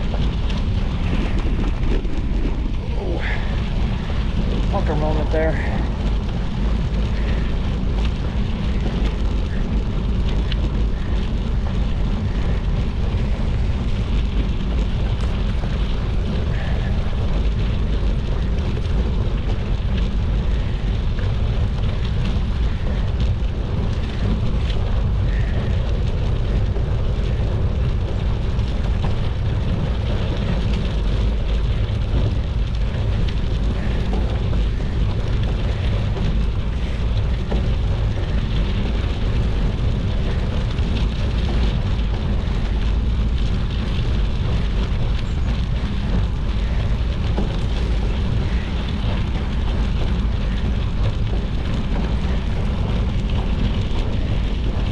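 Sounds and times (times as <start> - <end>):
bike tyres rolling on gravel: 0.0 - 54.9
wind rumble on microphone: 0.0 - 54.9.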